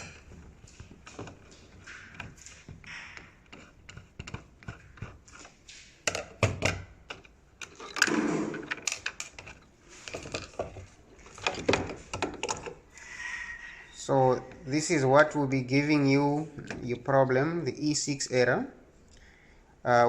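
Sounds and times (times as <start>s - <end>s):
small parts clicking and rattling: 0.0s - 12.8s.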